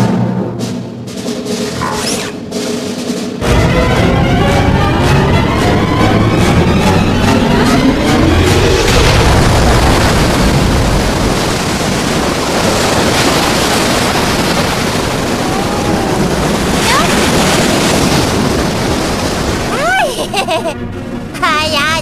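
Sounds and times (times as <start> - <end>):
rushing surging water: 8.9 - 20.7.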